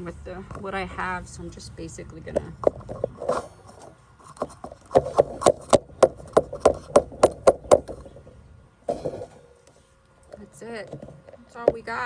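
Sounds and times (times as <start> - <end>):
sharp taps: 4.4 - 8.3.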